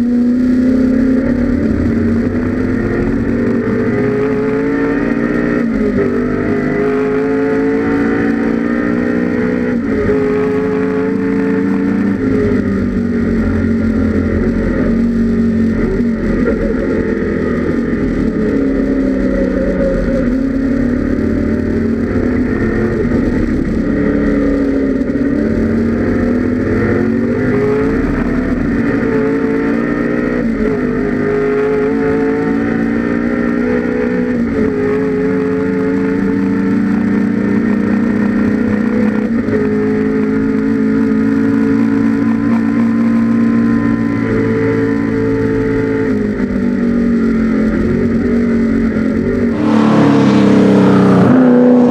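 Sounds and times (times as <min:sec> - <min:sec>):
race car engine revving: 0:45.8 - 0:51.9.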